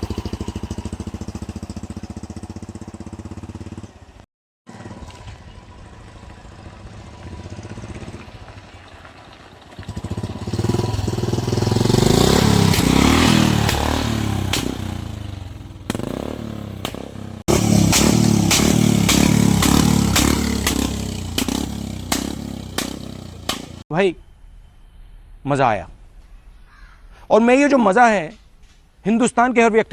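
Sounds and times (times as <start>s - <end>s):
engine revving: 0.0s - 4.0s, 9.8s - 23.8s
loud exhaust bangs: 4.7s - 23.8s.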